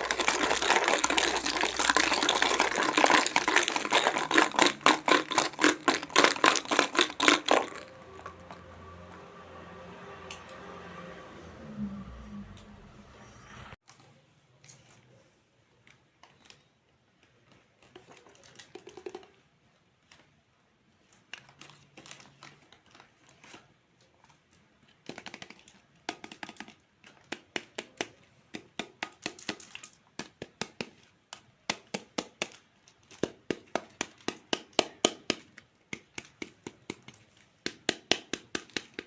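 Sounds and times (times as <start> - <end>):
toy knife cutting plastic fruit: 0.0 - 8.6.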